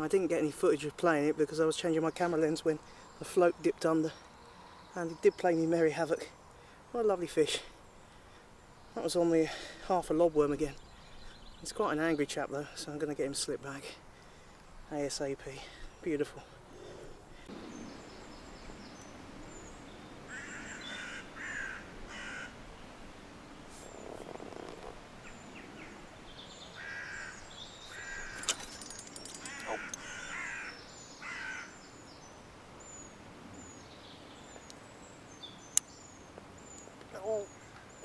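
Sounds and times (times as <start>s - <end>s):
small birds chirping: 0.0s - 21.7s, 22.8s - 38.0s
crows cawing: 20.3s - 22.6s, 26.7s - 28.6s, 29.3s - 31.8s.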